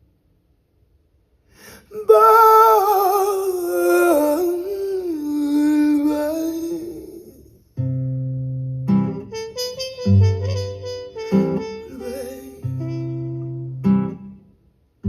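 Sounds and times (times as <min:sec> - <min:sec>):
person singing long note with vibrato: 0:01.6 - 0:07.6, 0:11.5 - 0:13.2.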